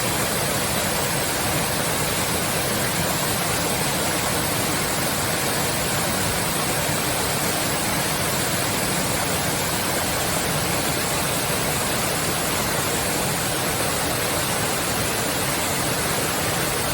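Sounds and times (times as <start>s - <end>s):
waterfall rushing: 0.0s - 16.9s.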